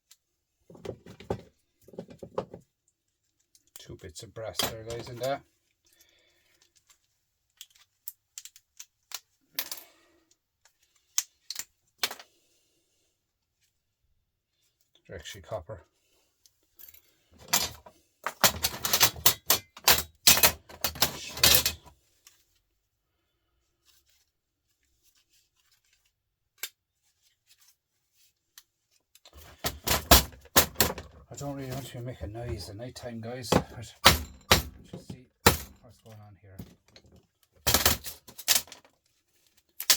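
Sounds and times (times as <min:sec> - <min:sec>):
metal scrap parts clicking and clinking: 0:04.5 - 0:05.4, 0:16.8 - 0:21.9, 0:29.3 - 0:38.9
small metal parts clicking: 0:06.6 - 0:09.9, 0:16.8 - 0:21.9, 0:36.6 - 0:38.8.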